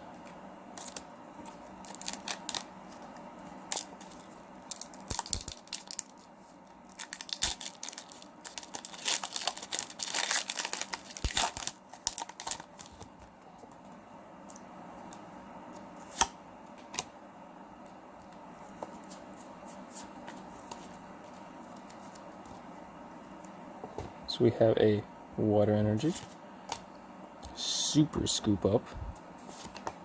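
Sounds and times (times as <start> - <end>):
foil wrapper tearing and crinkling: 1.8 - 2.7, 3.7 - 13.1.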